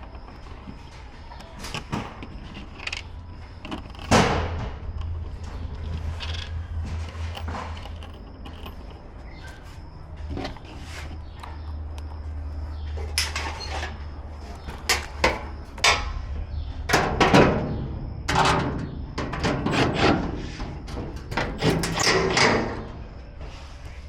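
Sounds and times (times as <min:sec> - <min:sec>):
steady low hum: 0:00.0 - 0:24.0
metal parts knocking and clicking: 0:01.4 - 0:12.2, 0:13.0 - 0:16.2, 0:16.9 - 0:20.3, 0:21.0 - 0:23.0.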